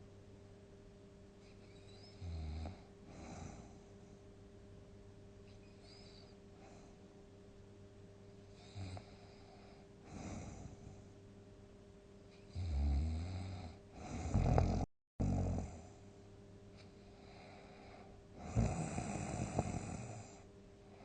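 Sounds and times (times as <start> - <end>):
person snoring: 12.5 - 15.8, 18.4 - 20.4
soft breath: 16.7 - 21.0.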